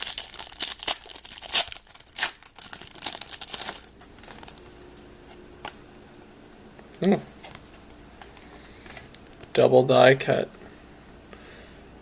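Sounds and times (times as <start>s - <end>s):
plastic packaging crinkling: 0.0s - 4.8s.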